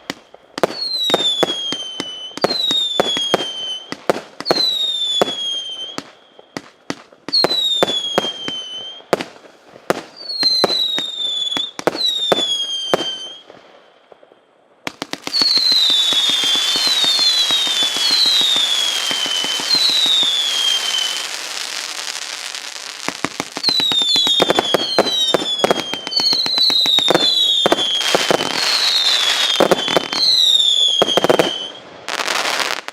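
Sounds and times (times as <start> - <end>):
falling firework whistles: 0.0 - 13.9, 14.9 - 32.9
firework crackling: 14.9 - 32.9
firework shots: 14.9 - 32.9.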